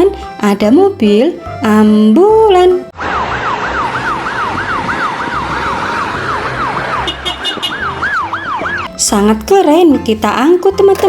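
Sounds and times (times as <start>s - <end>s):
ambulance siren yelping: 2.9s - 9.0s.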